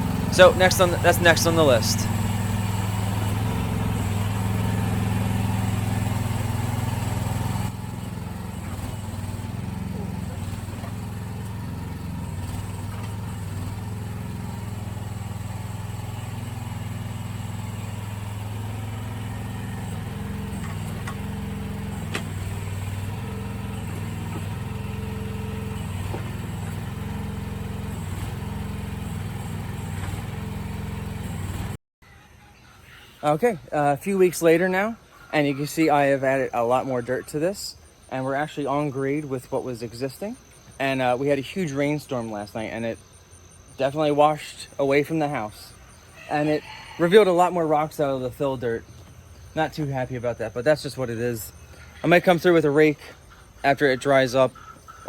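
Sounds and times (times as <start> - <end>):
excavator engine running: 0.0 - 31.8.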